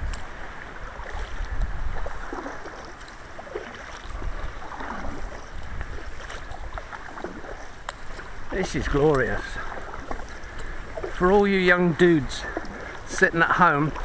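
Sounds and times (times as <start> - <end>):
paddle splashing in water: 0.0 - 14.0
wind rumbling on microphone: 0.0 - 14.0.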